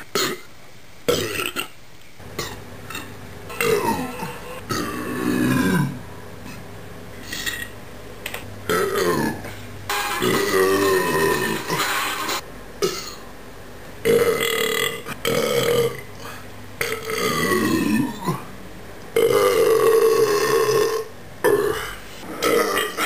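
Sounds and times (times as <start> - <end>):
man burping: 2.4 - 6.0, 7.2 - 7.7, 8.7 - 9.5, 12.8 - 13.2, 14.0 - 18.5, 19.2 - 23.0.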